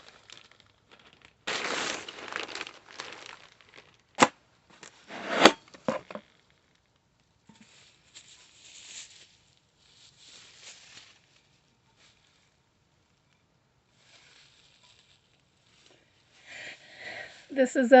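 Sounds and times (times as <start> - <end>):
package wrapping ripping: 0.0 - 6.2
wrapping crinkling: 0.0 - 6.8, 7.6 - 12.5.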